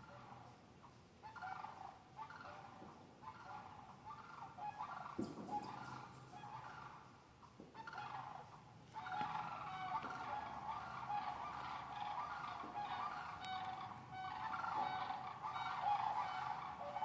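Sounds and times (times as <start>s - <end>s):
cranes calling: 1.2s - 17.0s
thump: 5.2s - 5.6s.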